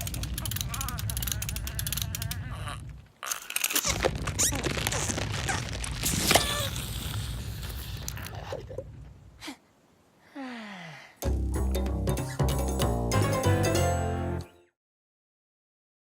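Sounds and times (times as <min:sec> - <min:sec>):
music: 0:11.2 - 0:14.8.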